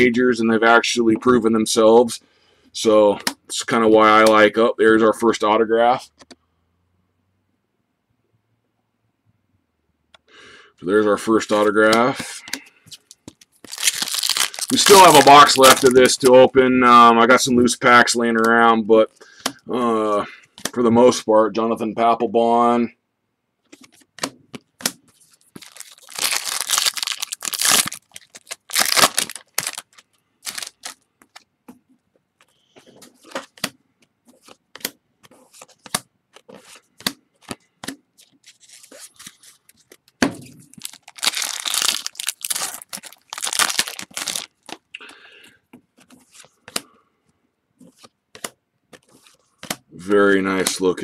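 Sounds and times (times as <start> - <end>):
card wrappers tearing: 13.5 - 16.3, 25.1 - 31.4, 38.2 - 39.9, 40.7 - 44.8
wrapper crackling: 13.5 - 16.3, 25.3 - 31.0, 40.7 - 44.8
cards clicking and snapping: 46.3 - 46.9, 47.9 - 49.8.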